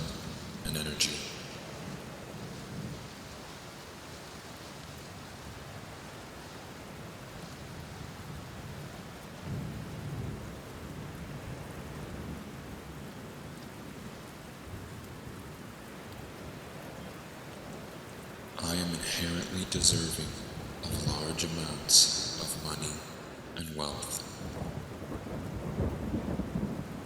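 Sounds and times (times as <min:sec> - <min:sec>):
steady rain: 0:00.0 - 0:27.0
thunder rumble: 0:19.8 - 0:27.0.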